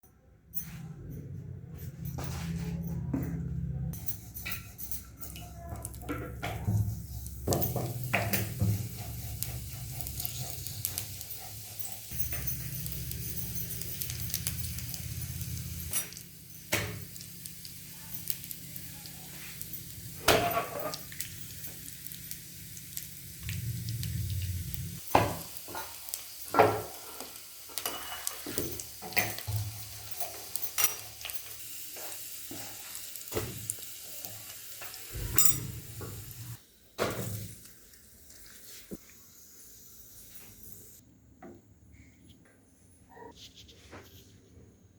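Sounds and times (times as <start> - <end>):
garlic sizzling in oil: 5.9 - 41.0
spoon clinking against pan: 19.8 - 22.0, 27.8 - 31.5.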